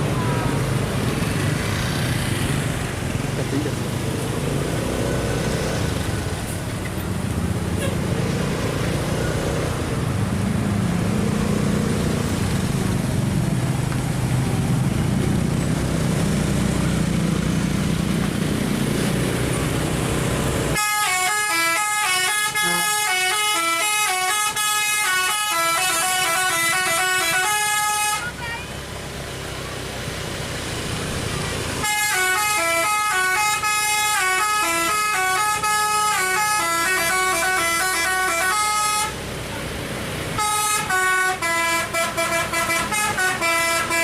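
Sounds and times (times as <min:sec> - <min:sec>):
passing traffic: 0:00.0 - 0:44.0
multi-tone horn melody: 0:20.7 - 0:28.7, 0:31.8 - 0:39.2, 0:40.4 - 0:44.0.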